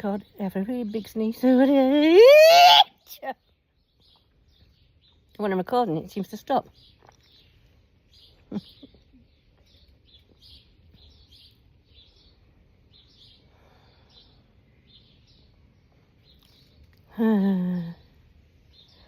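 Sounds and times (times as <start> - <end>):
starlings chirping: 3.4 - 16.8, 17.8 - 19.0.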